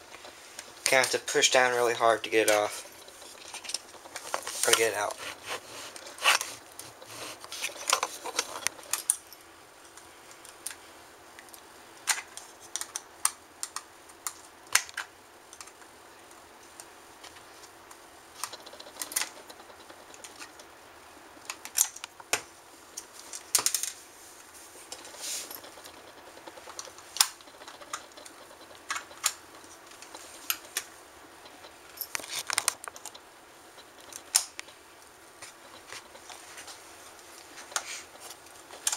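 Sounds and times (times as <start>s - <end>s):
plastic parts handled: 2.2s - 9.2s, 24.9s - 33.2s.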